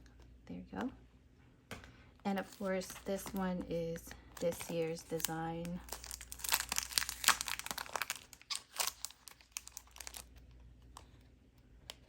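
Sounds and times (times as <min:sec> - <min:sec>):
packaging crinkling: 0:02.4 - 0:11.1.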